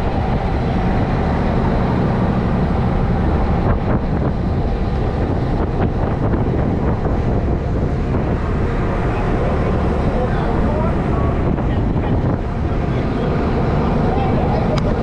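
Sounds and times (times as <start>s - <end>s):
boat engine running: 0.0s - 15.0s
wind buffeting microphone: 0.0s - 15.0s.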